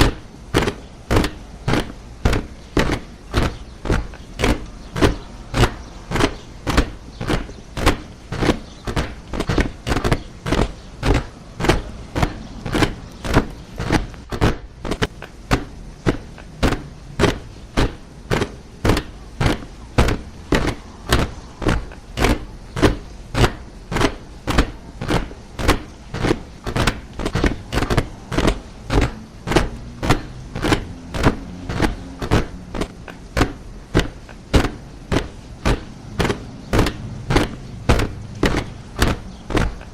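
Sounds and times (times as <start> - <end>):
soldiers marching in step: 0.0 - 39.9.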